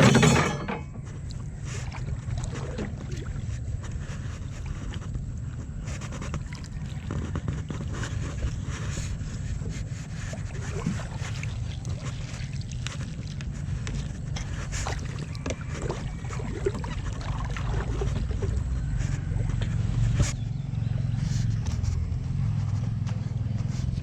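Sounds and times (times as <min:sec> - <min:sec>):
knocks: 0:00.0 - 0:01.1
boat low rumble: 0:00.0 - 0:24.0
water splashes: 0:01.2 - 0:20.3.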